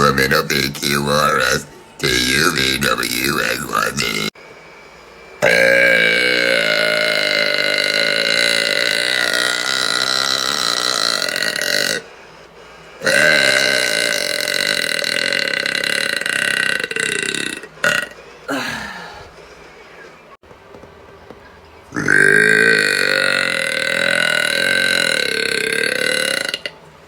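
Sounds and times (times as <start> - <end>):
woman belching: 5.4 - 12.1, 13.0 - 19.3, 21.9 - 26.8.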